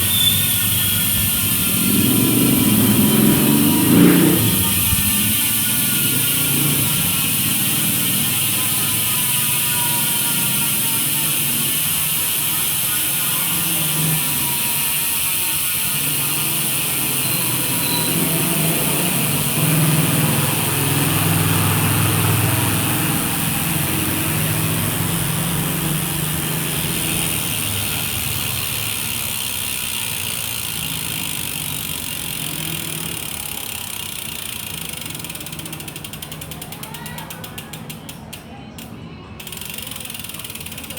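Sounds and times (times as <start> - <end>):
bicycle freewheel clicking buzz: 0.0 - 40.9.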